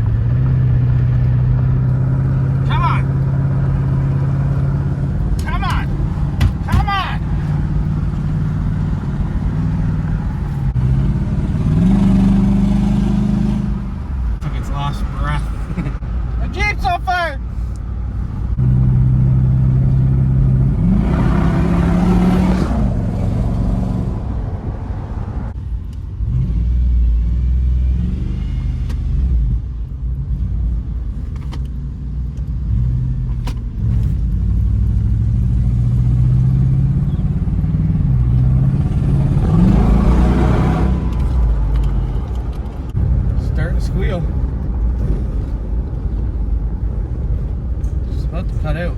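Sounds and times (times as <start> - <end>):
engine with rod knock straining: 0.0 - 10.8.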